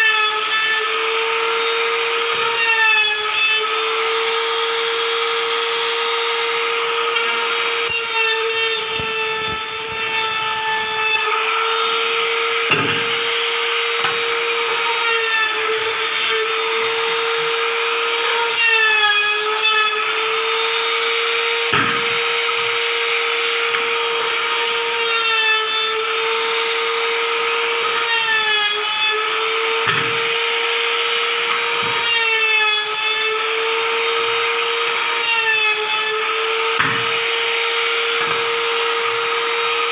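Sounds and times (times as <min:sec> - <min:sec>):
router whining: 0:00.0 - 0:39.9
router bit cutting wood hiss: 0:00.1 - 0:39.9.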